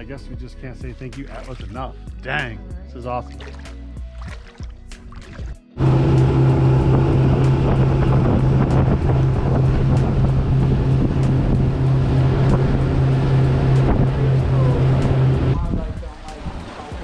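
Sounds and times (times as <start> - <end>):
outboard engine droning: 3.4 - 17.0
wind buffeting microphone: 5.8 - 17.0.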